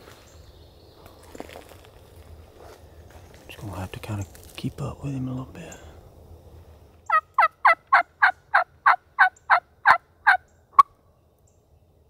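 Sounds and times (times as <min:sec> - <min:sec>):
turkey yelps: 0:07.1 - 0:10.9.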